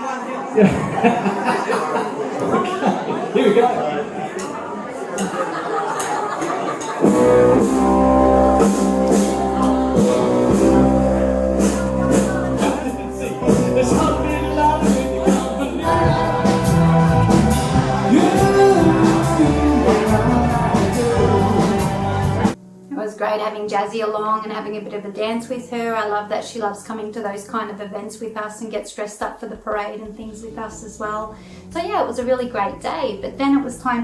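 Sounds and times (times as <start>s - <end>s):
band playing music with singing: 7.0s - 22.6s.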